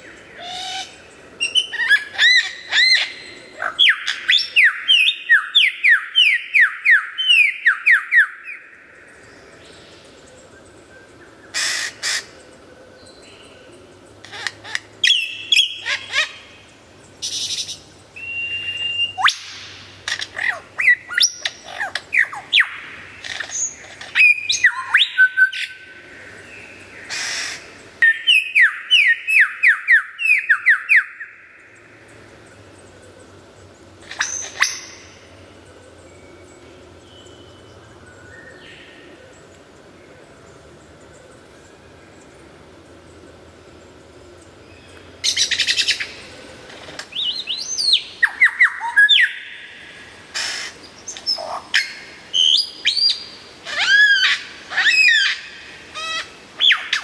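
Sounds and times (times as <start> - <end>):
lyrebird whistles and chirps: 17.2 - 19.6, 47.1 - 49.7.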